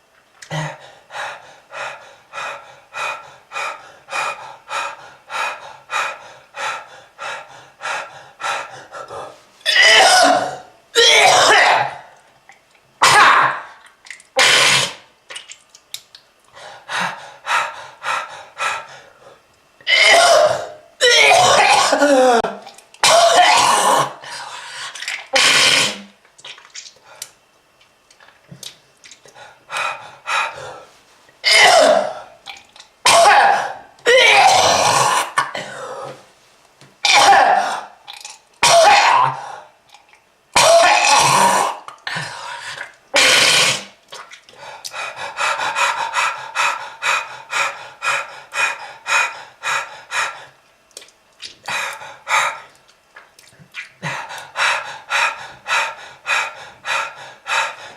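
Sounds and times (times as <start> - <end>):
harsh throat-clearing: 9.7 - 12.0, 14.4 - 15.1, 19.8 - 24.2, 25.3 - 26.2, 31.4 - 36.2, 37.0 - 39.6, 40.6 - 42.4, 43.1 - 44.0
person coughing hard: 9.7 - 12.1, 13.0 - 13.7, 19.9 - 24.2, 31.4 - 32.3, 33.1 - 35.8, 37.0 - 37.9, 38.6 - 39.5, 40.6 - 41.8.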